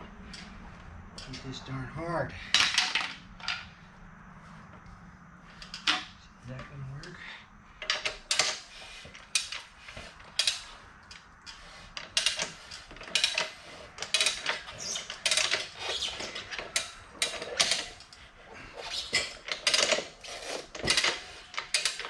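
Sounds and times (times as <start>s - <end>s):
tire changer scraping tire bead: 7.8s - 22.0s.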